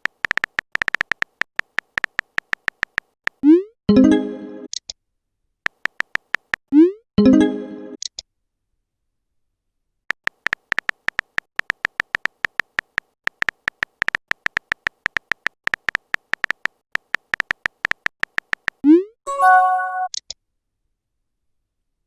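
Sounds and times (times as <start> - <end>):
phone keyboard tapping clicks: 0.0 - 3.4, 5.7 - 6.6, 10.1 - 18.8.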